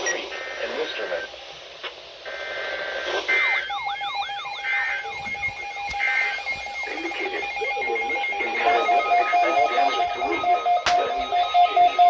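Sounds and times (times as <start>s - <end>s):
sweeping alarm tone: 3.4s - 12.0s.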